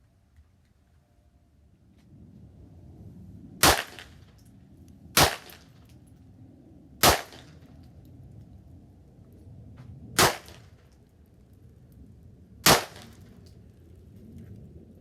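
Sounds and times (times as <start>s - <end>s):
low background rumble: 0.0s - 15.0s
pistol shots: 3.6s - 4.1s, 5.2s - 5.6s, 7.0s - 7.5s, 10.2s - 10.6s, 12.6s - 13.2s.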